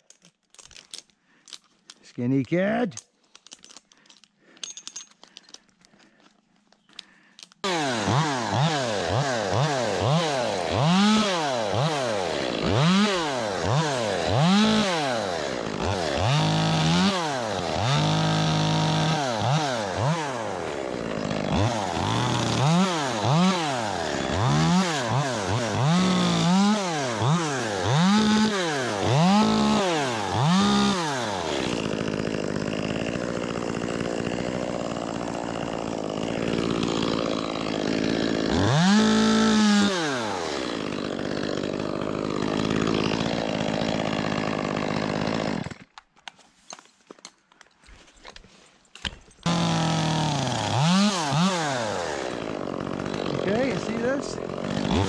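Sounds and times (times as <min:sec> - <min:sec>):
chainsaw revving: 0:07.6 - 0:45.9, 0:49.4 - 0:55.0.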